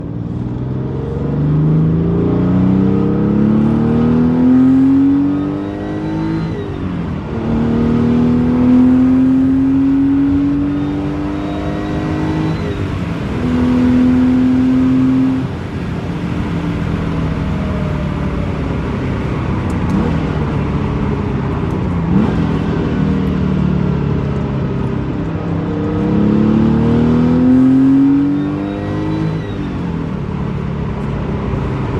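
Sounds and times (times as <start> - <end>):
car engine accelerating hard: 0.0 - 31.9.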